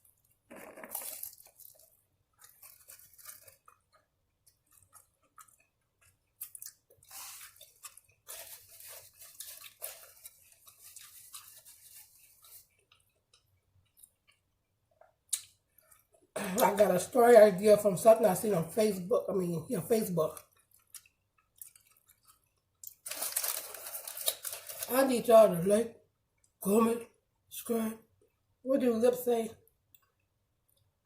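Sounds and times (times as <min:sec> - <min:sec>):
person chewing: 0:00.2 - 0:16.7, 0:20.3 - 0:24.9
mouth noises: 0:00.5 - 0:01.2.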